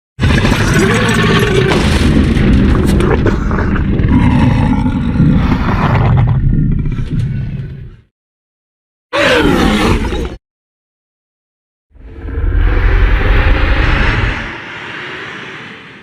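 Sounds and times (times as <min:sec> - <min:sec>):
deep rumbling growl-roar: 0:00.2 - 0:08.1, 0:09.2 - 0:10.4, 0:12.0 - 0:15.1.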